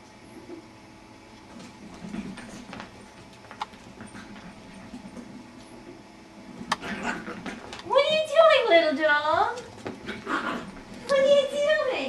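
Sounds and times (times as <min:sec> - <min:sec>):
dogs scuffling: 0:01.4 - 0:12.0
faint low dog growls: 0:06.7 - 0:07.8, 0:10.0 - 0:11.0.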